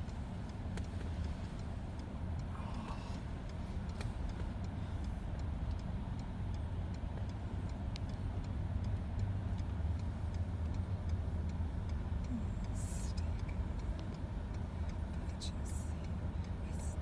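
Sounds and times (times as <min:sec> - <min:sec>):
car road rumble in snow: 0:00.0 - 0:17.0
faint regular ticking: 0:00.0 - 0:17.0.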